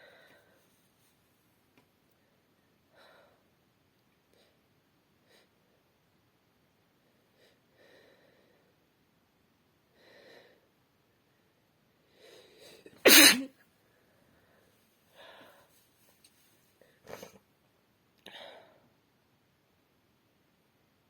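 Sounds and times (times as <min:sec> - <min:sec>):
woman sneezing: 0:13.0 - 0:13.5
catching breaths: 0:14.2 - 0:15.8.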